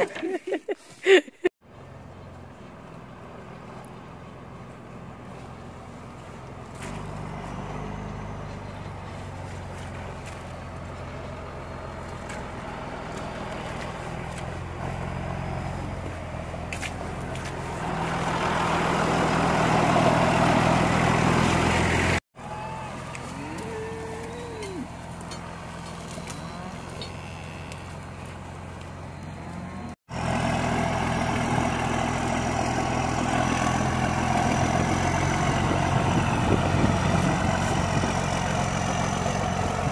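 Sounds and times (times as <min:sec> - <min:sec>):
vehicle engine running: 0:01.6 - 0:39.9.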